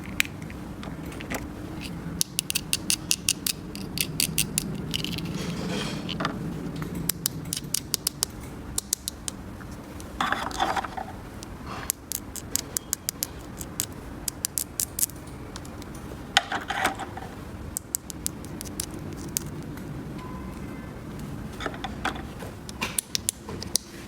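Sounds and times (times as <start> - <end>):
plastic toy pieces clicking: 1.8 - 5.4, 7.0 - 9.4, 11.4 - 15.9, 17.7 - 19.7, 22.7 - 23.9.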